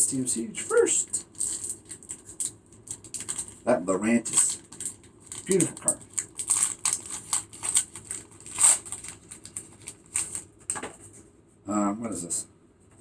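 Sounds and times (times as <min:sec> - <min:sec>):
foil pack crinkling: 0:00.8 - 0:11.0.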